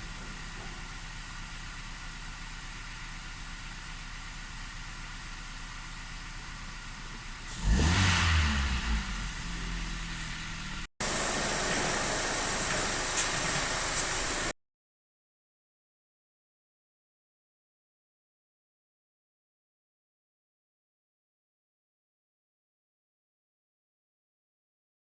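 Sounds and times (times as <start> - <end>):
car engine running and revving: 0.0 - 14.5.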